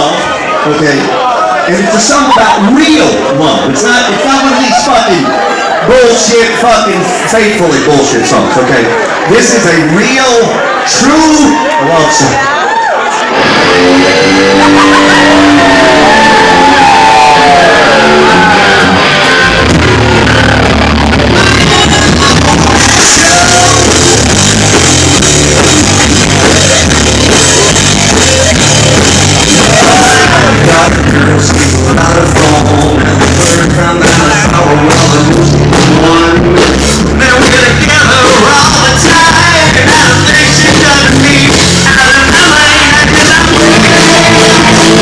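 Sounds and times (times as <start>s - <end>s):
live rock band playing: 13.0s - 45.0s
person singing: 21.2s - 24.3s, 29.5s - 45.0s.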